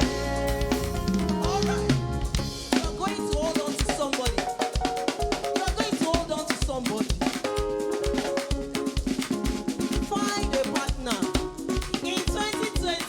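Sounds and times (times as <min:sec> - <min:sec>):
melodic instrumental line: 0:00.0 - 0:05.9
drum kit snare and bass drum: 0:00.0 - 0:13.0
upbeat gospel praise music: 0:00.0 - 0:13.0.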